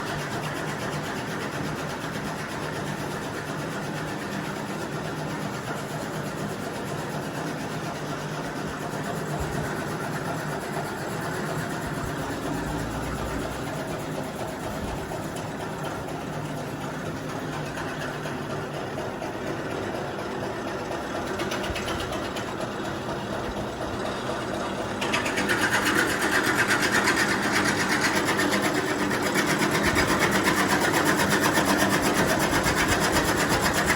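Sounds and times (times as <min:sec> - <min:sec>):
machine rattling: 0:20.8 - 0:33.9.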